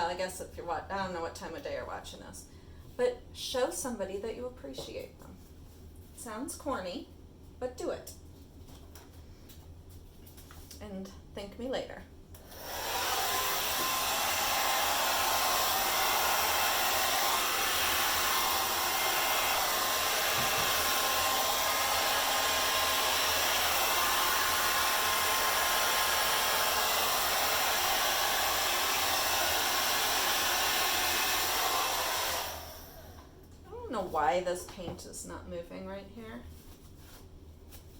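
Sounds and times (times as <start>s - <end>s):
hair dryer running: 12.4s - 33.4s.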